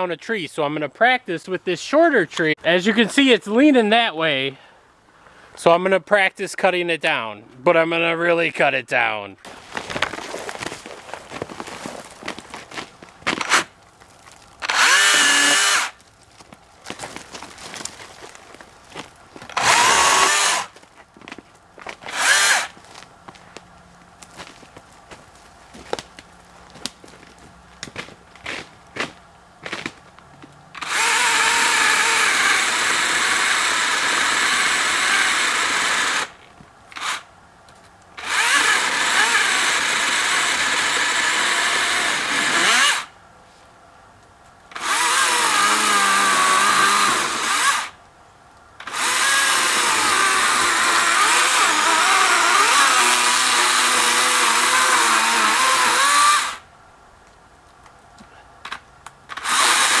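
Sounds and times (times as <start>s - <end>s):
chainsaw cutting tree: 12.3s - 13.7s, 14.6s - 16.0s, 19.5s - 20.8s, 22.0s - 22.8s, 30.7s - 36.4s, 37.0s - 37.2s, 38.2s - 43.1s, 44.7s - 48.0s, 48.8s - 56.6s, 59.3s - 60.0s.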